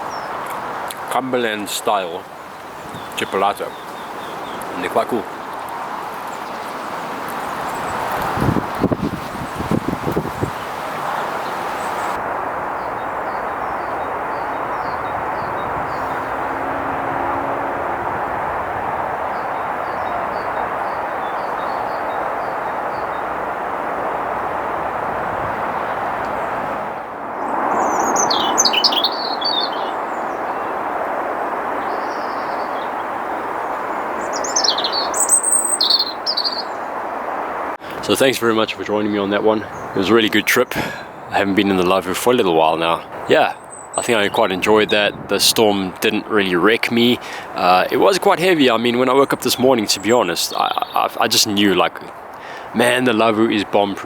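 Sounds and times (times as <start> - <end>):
songbird warbling: 0.0 - 0.9, 2.2 - 12.2, 12.8 - 17.6, 19.2 - 23.5, 27.4 - 30.9, 31.7 - 36.9, 46.9 - 53.2
strong wind through trees: 0.0 - 54.0
small bird chirping: 27.7 - 30.8, 31.8 - 36.8.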